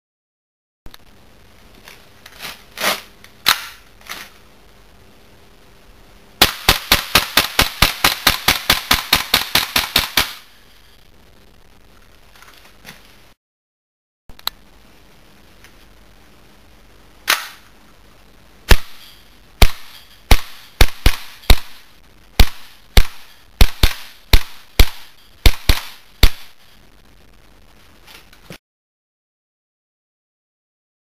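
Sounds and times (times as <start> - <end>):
airsoft pistol shots: 6.4 - 10.5, 17.2 - 17.6, 18.7 - 19.0, 19.6 - 21.8, 22.4 - 26.6.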